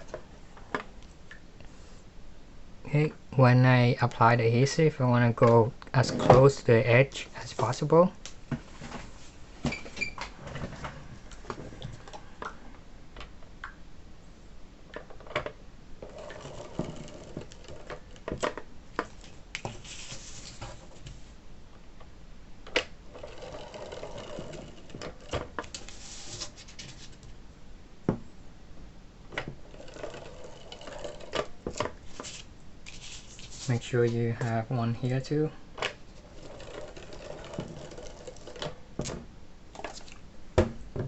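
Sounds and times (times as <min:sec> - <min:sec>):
tape runner rasping: 0:16.0 - 0:18.6, 0:23.1 - 0:26.5, 0:29.7 - 0:32.4, 0:36.1 - 0:38.8.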